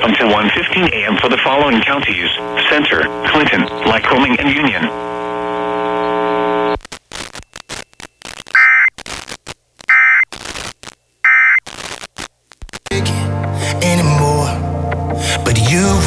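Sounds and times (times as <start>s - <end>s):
crackling radio static: 0.0s - 13.0s
short data bursts: 5.9s - 12.1s.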